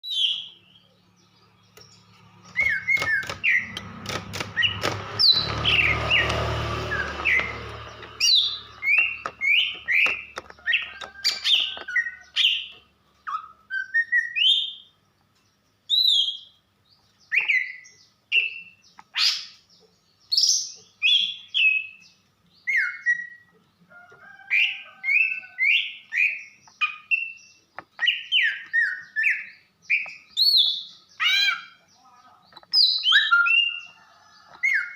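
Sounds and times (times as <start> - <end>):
bird chirping and whistling: 0.0 - 0.6, 2.5 - 3.8, 4.4 - 14.9, 15.9 - 16.6, 17.2 - 19.6, 20.3 - 23.5, 24.6 - 31.8, 32.7 - 34.0, 34.6 - 34.9.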